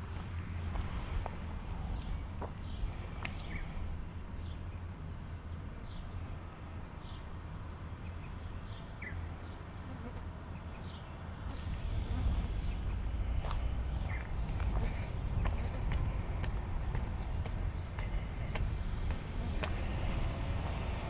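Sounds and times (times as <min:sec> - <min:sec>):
steady low rumble: 0:11.4 - 0:21.0.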